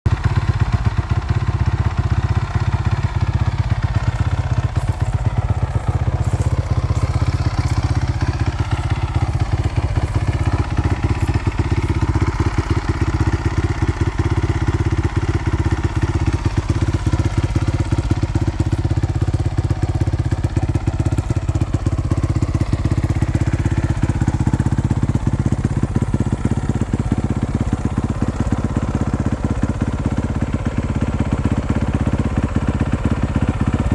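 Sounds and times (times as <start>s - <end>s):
motorcycle engine idling: 0.1s - 33.9s.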